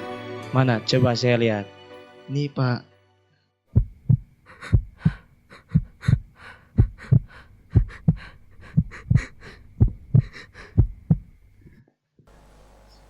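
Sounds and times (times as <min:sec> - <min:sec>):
heartbeat thumps: 0:03.7 - 0:11.4
faint steady hum: 0:03.7 - 0:13.0.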